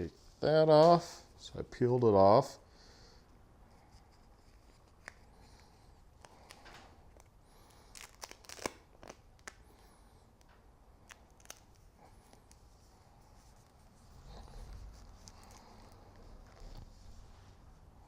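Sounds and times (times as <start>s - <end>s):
paper backing crinkling: 4.0s - 9.7s, 11.0s - 17.2s.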